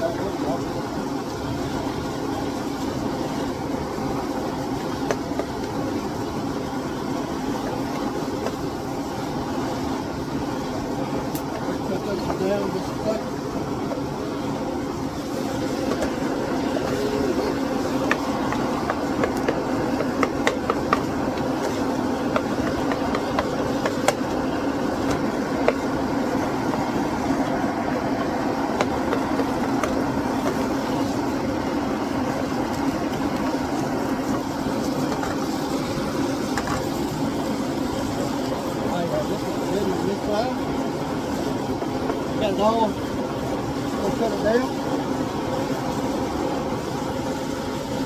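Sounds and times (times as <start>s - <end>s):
meat sizzling in pans: 0.0s - 48.0s
sharp pops and clicks: 11.3s - 11.7s, 17.9s - 26.0s, 28.2s - 30.8s.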